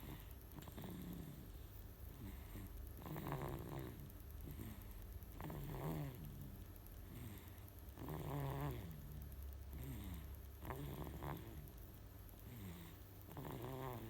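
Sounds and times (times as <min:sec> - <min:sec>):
baby snoring: 0:02.2 - 0:04.7, 0:09.8 - 0:11.6, 0:12.6 - 0:14.0.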